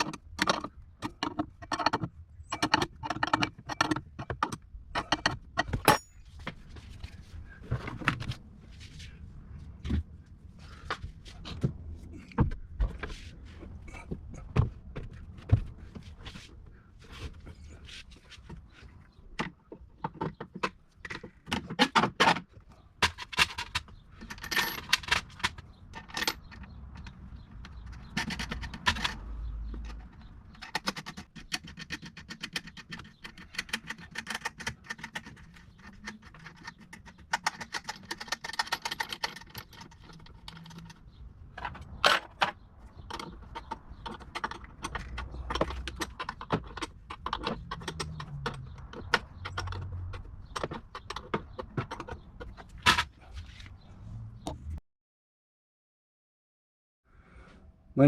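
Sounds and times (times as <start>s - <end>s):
metal tools clinking: 5.0s - 6.3s, 24.2s - 26.7s.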